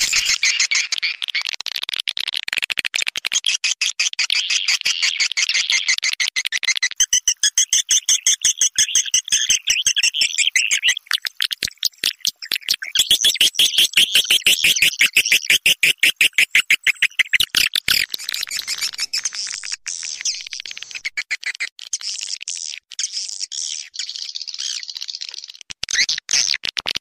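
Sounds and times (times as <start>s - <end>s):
soft continuous twittering: 0.0s - 0.6s, 16.2s - 21.2s
rapid high chirps and clicks: 0.0s - 27.0s.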